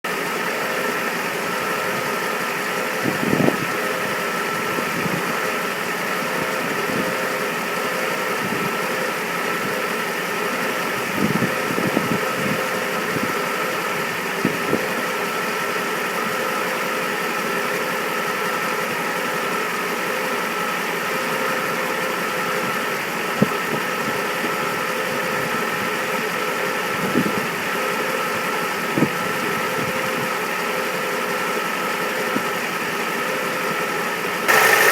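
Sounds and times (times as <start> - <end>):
car engine idling: 34.5 - 34.9
thin steady whine: 34.5 - 34.9.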